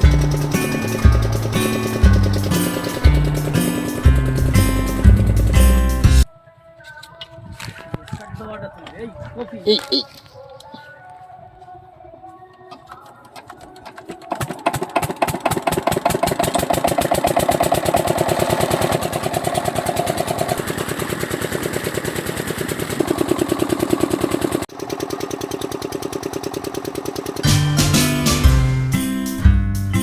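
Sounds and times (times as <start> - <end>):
music: 0.0 - 9.4, 27.4 - 30.0.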